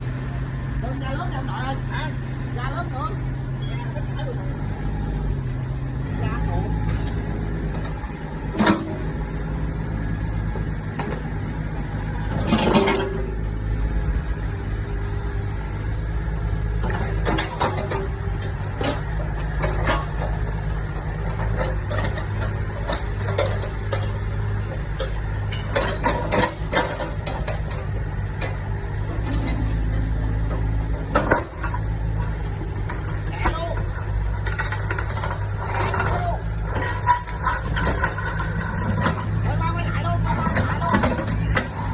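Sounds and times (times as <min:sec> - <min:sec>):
diesel engine running: 0:00.0 - 0:41.9
metallic clanks and knocks: 0:06.7 - 0:09.1, 0:12.3 - 0:13.4, 0:16.8 - 0:39.4, 0:40.3 - 0:41.9.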